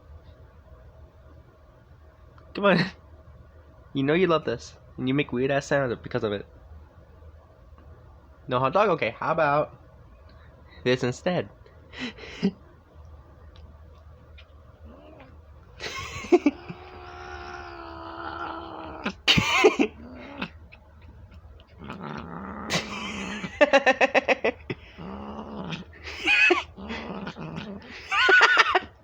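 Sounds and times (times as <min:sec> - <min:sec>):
cat stuttering pulses: 0:14.1 - 0:29.0
cat calling and crying: 0:25.6 - 0:28.9.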